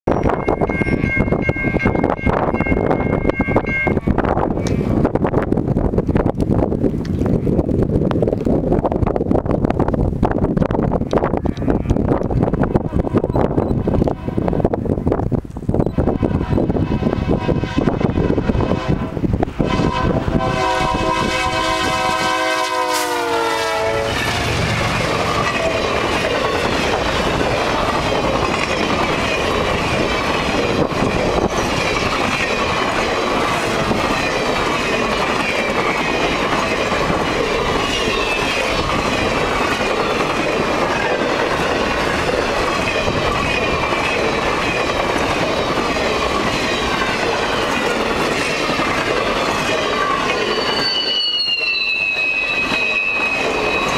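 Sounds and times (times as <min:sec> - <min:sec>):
freight cars rumbling on rails: 0:00.1 - 0:53.9
locomotive horn chord: 0:16.1 - 0:24.5.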